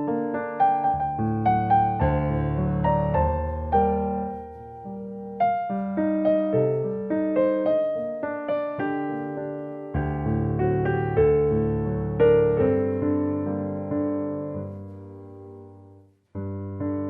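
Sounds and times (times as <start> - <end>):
slow piano melody: 0.0 - 17.0.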